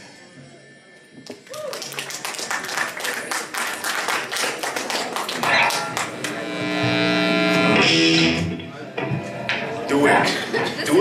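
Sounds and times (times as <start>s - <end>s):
guitar chord ringing: 5.4s - 9.8s.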